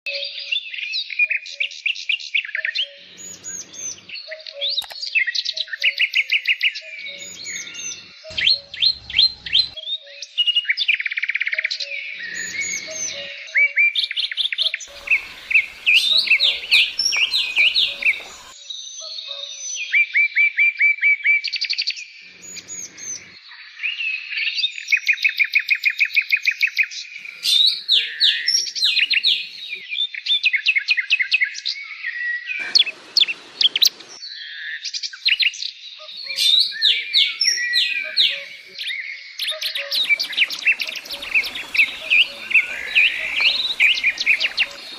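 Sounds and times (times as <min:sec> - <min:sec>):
small songbird chirping: 0:00.1 - 0:10.4, 0:11.8 - 0:18.6, 0:35.1 - 0:44.9.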